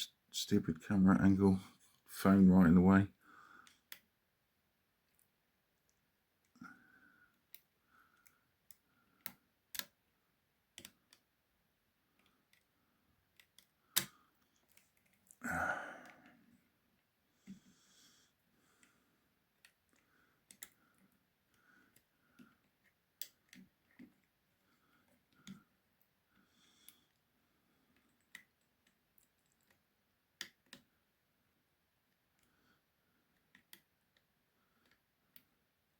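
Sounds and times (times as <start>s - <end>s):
lock picks clicking and scraping: 28.0s - 29.9s.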